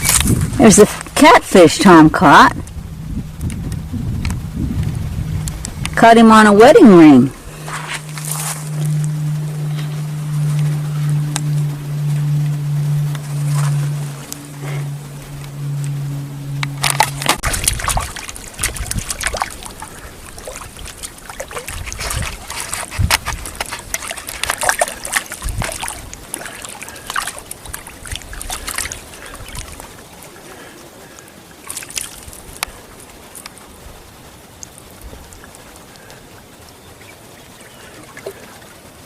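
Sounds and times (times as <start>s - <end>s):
water splashing and sloshing: 0.0s - 39.0s
low musical chord: 2.6s - 22.8s.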